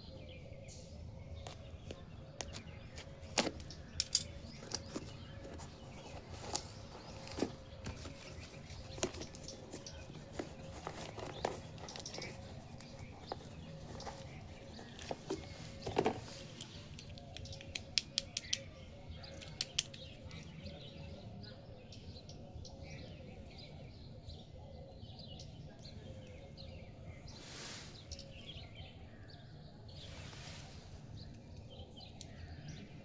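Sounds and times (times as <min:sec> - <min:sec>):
faint birds chirping: 0:00.0 - 0:33.0
sharp clicks: 0:16.6 - 0:18.7, 0:19.4 - 0:20.1
rustling hisses: 0:27.3 - 0:28.6, 0:29.9 - 0:31.3.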